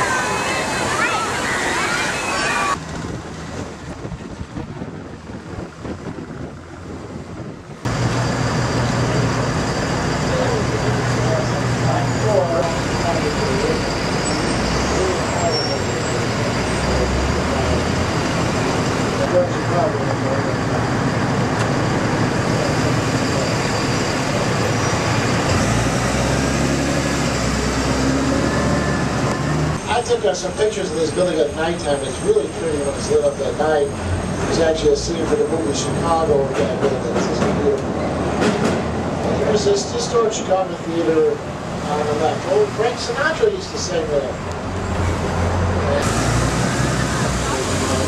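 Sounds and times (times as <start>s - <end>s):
road traffic noise: 0.0s - 48.0s
wind buffeting microphone: 2.8s - 8.0s.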